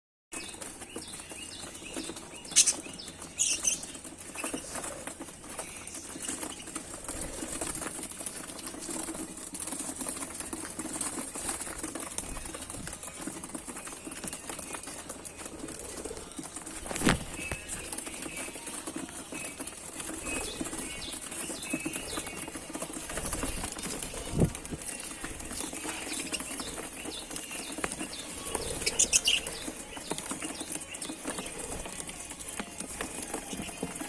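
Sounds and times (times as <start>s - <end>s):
birds flapping wings: 0.4s - 34.0s.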